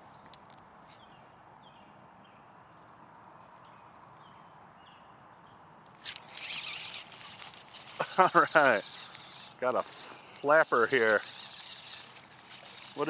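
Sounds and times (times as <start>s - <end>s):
small birds chirping: 3.6s - 13.0s.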